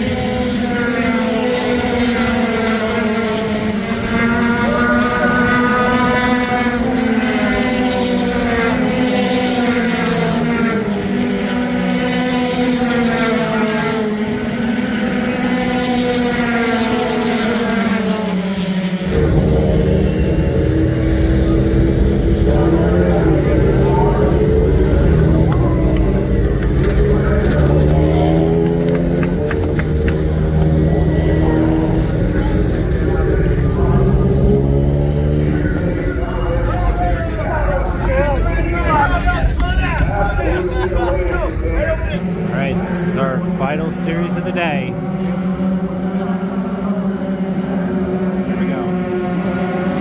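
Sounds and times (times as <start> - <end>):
race car engines droning: 0.0 - 50.0.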